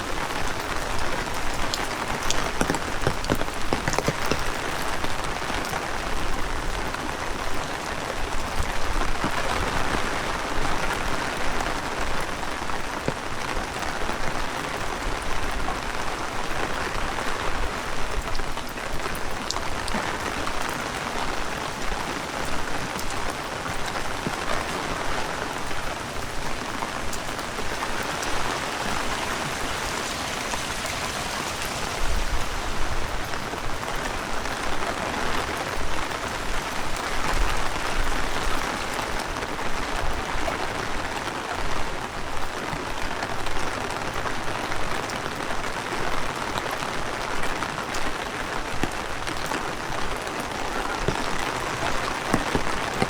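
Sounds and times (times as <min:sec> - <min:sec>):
heavy rain falling: 0:00.0 - 0:53.0
sharp raindrop hits: 0:19.6 - 0:39.7.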